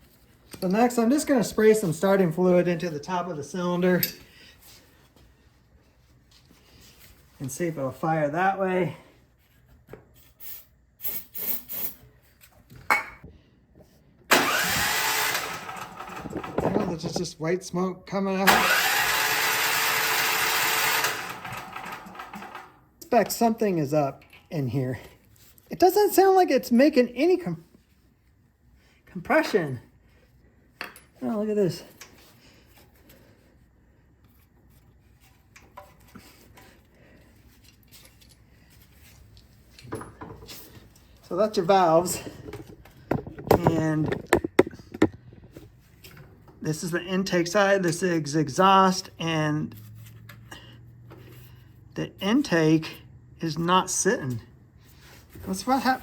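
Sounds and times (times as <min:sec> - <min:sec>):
engine cranking: 0:14.3 - 0:16.8, 0:18.5 - 0:22.7.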